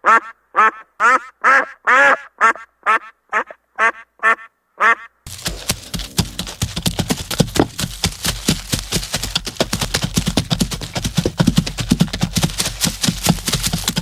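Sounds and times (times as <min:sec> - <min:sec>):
fast clatter of sharp knocks: 0:05.3 - 0:14.0.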